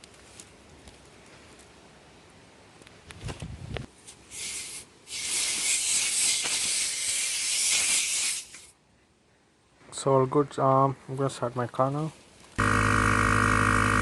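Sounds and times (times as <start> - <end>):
air hissing from tyre valve: 4.3 - 8.8.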